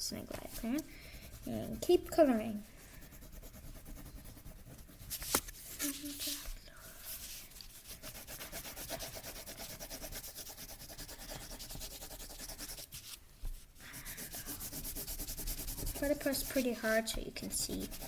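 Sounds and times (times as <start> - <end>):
crayon scribbling on paper: 0.3 - 6.5, 7.1 - 13.2, 13.8 - 18.0.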